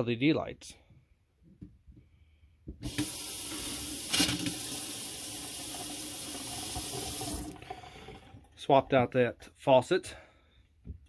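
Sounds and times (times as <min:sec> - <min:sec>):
water running into sink: 0:02.8 - 0:08.6.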